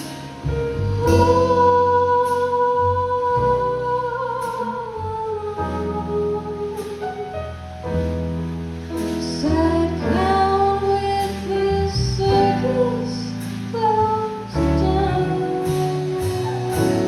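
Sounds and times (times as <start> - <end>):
bass: 0.0 - 17.0
piano: 0.0 - 17.0.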